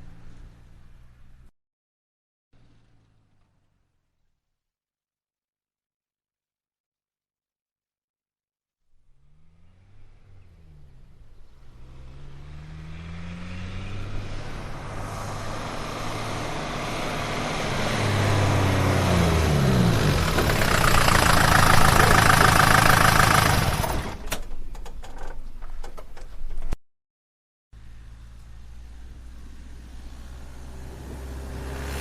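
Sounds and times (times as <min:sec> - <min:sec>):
car engine approaching: 0:00.0 - 0:01.5, 0:02.6 - 0:04.4, 0:08.9 - 0:25.6, 0:27.8 - 0:32.0.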